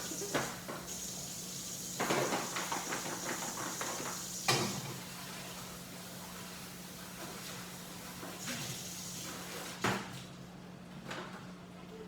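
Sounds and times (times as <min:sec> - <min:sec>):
running tap water hissing: 0:00.0 - 0:04.5.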